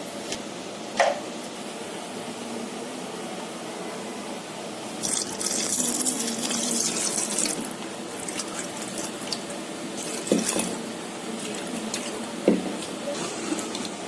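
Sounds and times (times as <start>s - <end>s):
water dripping and splashing: 5.0s - 12.2s
tap water running into sink: 5.0s - 14.0s.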